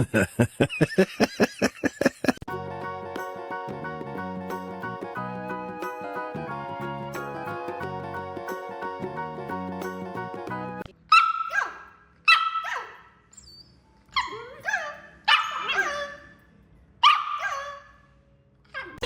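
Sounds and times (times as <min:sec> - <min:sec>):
dog barking: 0:11.1 - 0:13.1, 0:14.2 - 0:16.3, 0:17.0 - 0:18.0.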